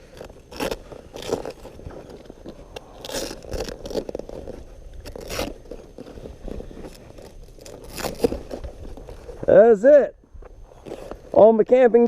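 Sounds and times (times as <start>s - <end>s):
gear scraping and rustling: 0.0s - 12.0s.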